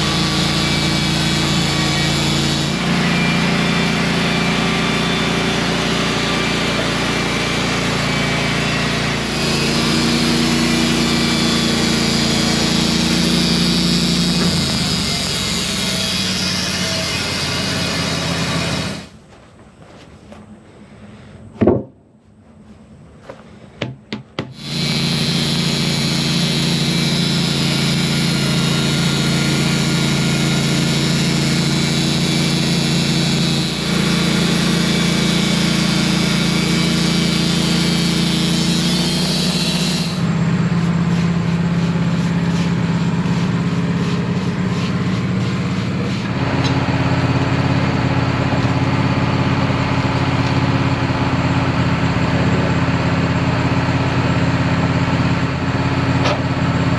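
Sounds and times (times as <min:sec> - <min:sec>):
band saw blade cutting log: 0:00.0 - 0:19.1, 0:24.4 - 0:51.5
sawmill engine running: 0:00.0 - 0:19.2, 0:24.5 - 0:56.9
thump: 0:21.6 - 0:22.0.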